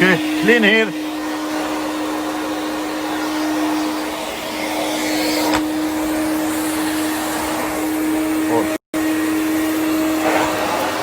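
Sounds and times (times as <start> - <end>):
vacuum cleaner running: 0.0 - 11.0.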